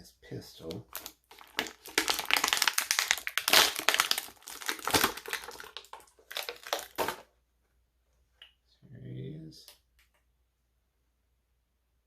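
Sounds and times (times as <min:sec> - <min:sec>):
plastic packaging crinkling: 0:00.9 - 0:07.3.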